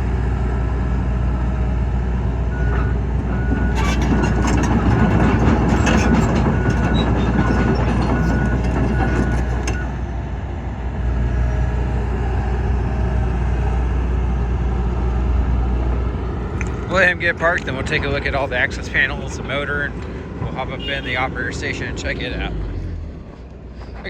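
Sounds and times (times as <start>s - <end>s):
diesel engine running: 0.0s - 24.0s
clanking and squeaking tracks: 2.5s - 10.1s, 16.5s - 24.0s.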